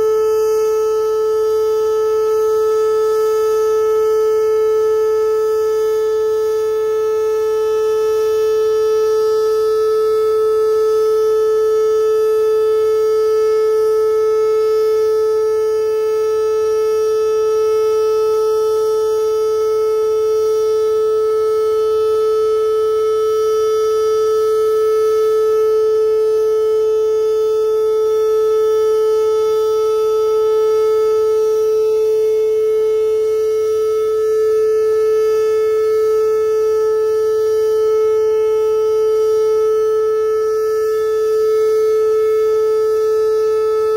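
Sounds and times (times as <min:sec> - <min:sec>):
tornado warning siren steady tone: 0:00.0 - 0:43.9.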